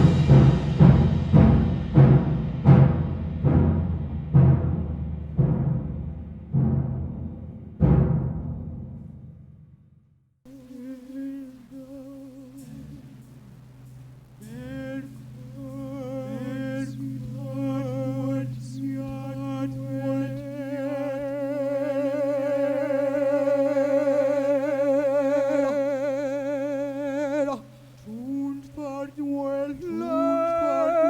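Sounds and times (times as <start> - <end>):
deep drum stroke: 0.0 - 9.8
person humming wavering tone: 10.5 - 13.3, 14.4 - 31.0
low steady drone: 10.5 - 31.0.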